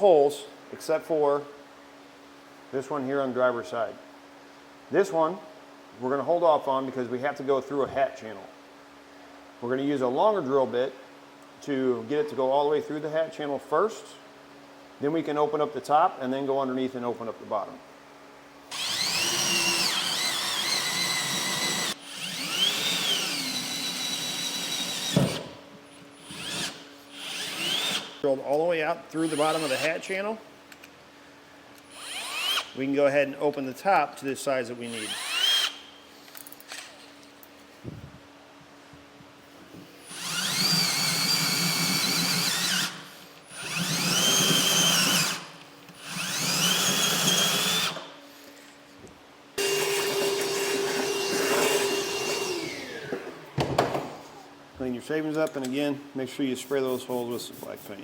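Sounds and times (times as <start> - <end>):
power drill drilling through metal: 18.7 - 25.4, 26.2 - 28.2, 29.2 - 29.9, 31.9 - 32.7, 34.9 - 35.8, 40.1 - 48.0, 49.6 - 53.2.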